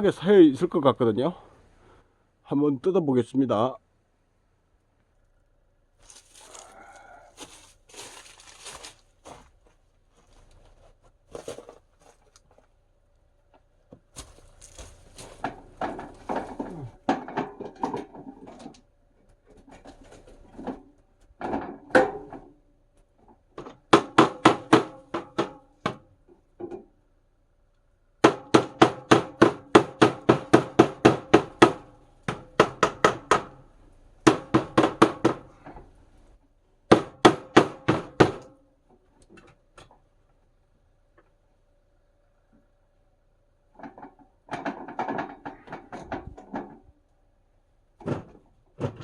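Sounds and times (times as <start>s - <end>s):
hammer striking metal flue pipe: 23.9s - 26.0s, 28.2s - 35.8s.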